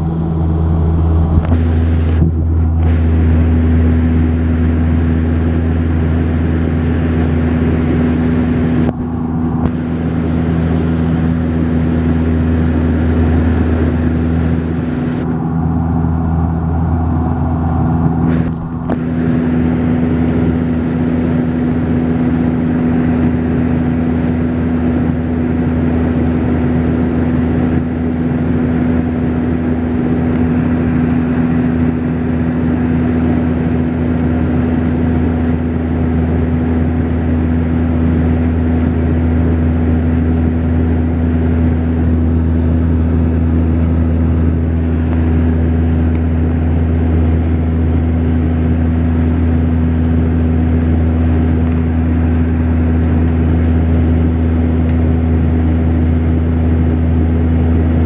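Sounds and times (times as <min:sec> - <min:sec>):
turboprop engines droning in cabin: 0:00.0 - 0:58.0.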